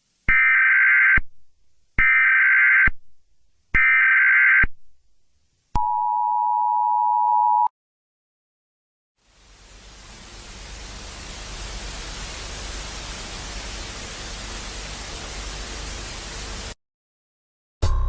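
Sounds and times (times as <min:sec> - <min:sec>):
hissing static: 0:09.2 - 0:16.8.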